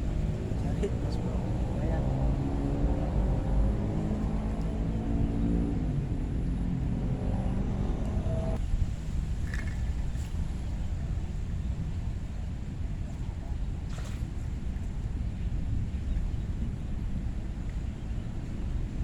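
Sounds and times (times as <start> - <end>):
motor engine humming: 0.0 - 8.6
steady low rumble: 0.0 - 19.0.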